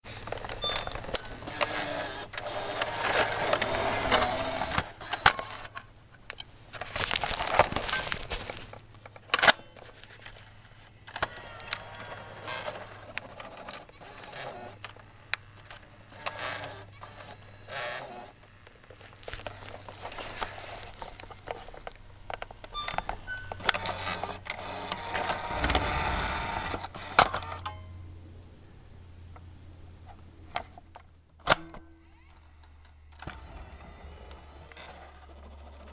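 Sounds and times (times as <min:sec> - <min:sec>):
low hum: 0:25.3 - 0:30.4
cassette deck eject clicks: 0:31.0 - 0:32.1.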